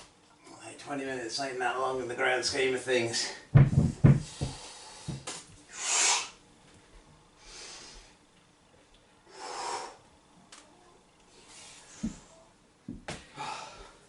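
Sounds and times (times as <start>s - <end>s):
man breathing hard: 4.1s - 6.3s, 9.3s - 10.1s, 13.3s - 14.0s.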